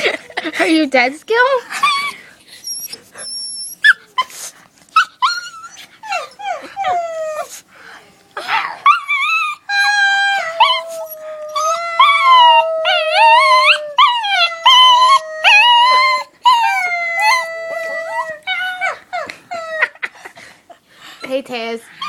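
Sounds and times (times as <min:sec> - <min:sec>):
dog whining: 0:01.7 - 0:07.7, 0:08.4 - 0:20.1
dog howling: 0:08.4 - 0:19.9.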